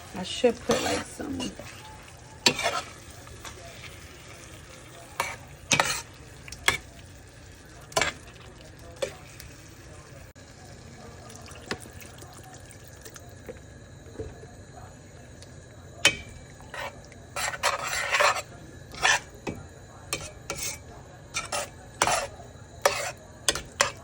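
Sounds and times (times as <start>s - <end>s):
spoon scraping a pan: 0.0s - 9.5s, 16.0s - 24.0s
meatballs sizzling in a frying pan: 0.0s - 12.5s.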